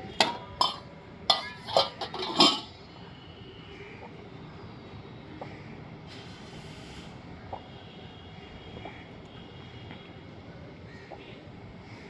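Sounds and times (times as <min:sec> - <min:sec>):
faint background noise: 0:00.0 - 0:12.0
drinking glasses clinking: 0:00.2 - 0:02.7.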